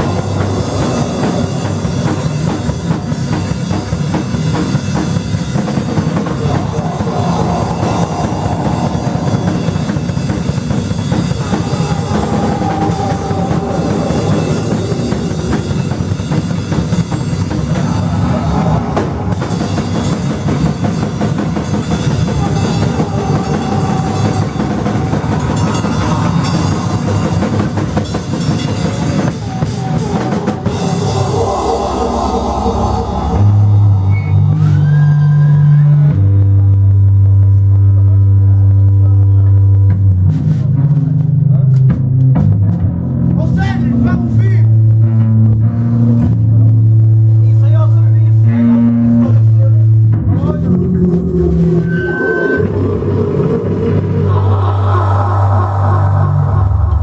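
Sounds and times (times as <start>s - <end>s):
fast drum kit playing: 0.0s - 33.5s.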